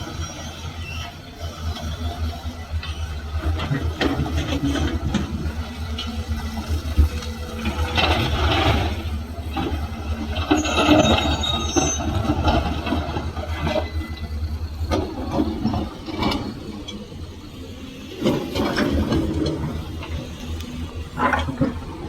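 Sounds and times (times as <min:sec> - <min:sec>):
diesel engine low hum: 0:00.0 - 0:22.0
scraping and clanking: 0:03.6 - 0:17.1.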